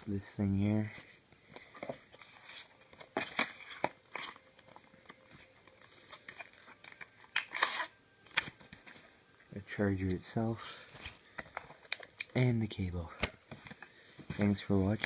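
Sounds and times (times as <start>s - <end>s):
plastic packaging crinkling: 2.2s - 9.0s.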